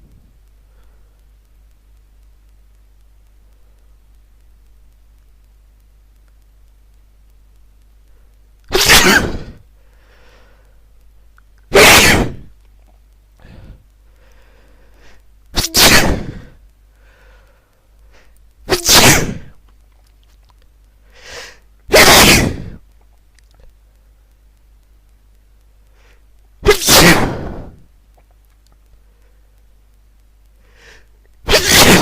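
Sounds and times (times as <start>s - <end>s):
faint breaths: 0.5s - 1.5s, 9.5s - 11.1s, 12.8s - 15.4s, 16.2s - 18.5s, 19.6s - 21.8s, 25.3s - 26.4s, 27.5s - 29.9s, 30.5s - 31.4s
person sneezing: 8.7s - 9.6s, 11.7s - 12.5s, 15.6s - 16.6s, 18.7s - 19.5s, 21.2s - 22.8s, 26.6s - 27.8s, 30.8s - 32.0s.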